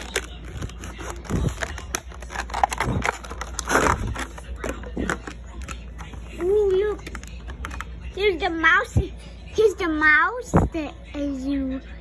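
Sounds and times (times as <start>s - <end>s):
packaging rustling and clicking: 0.0s - 7.9s.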